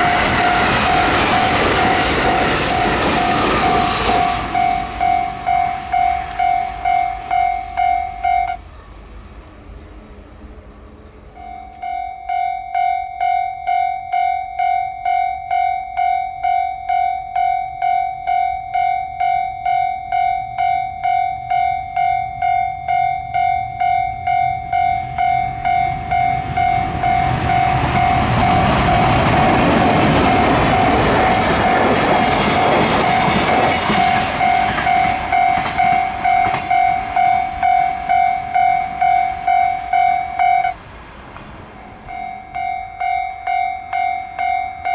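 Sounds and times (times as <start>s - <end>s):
level-crossing warning bell: 0.0s - 9.4s, 10.9s - 40.9s, 41.6s - 44.9s
train running noise: 0.0s - 44.9s.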